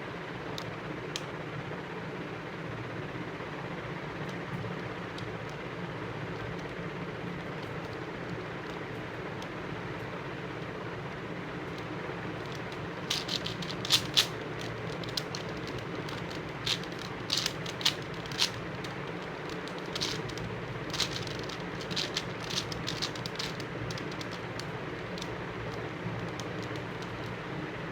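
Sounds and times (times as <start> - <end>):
puzzle cube plastic clicks: 11.8 - 27.5.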